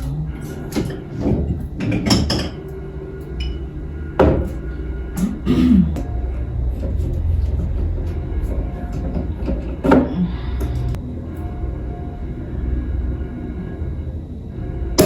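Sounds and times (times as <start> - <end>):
steady low hum: 0.0 - 15.0
objects knocking and clattering: 0.7 - 2.6.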